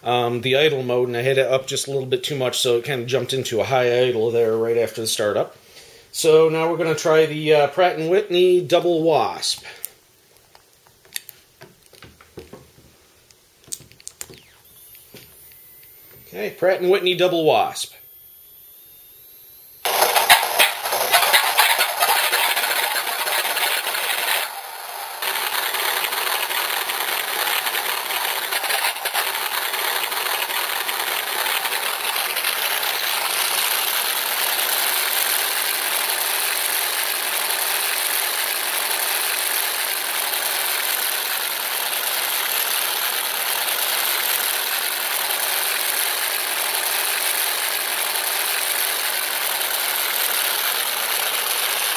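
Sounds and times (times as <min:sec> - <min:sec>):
simulated radial aircraft engine: 0:17.1 - 0:51.9.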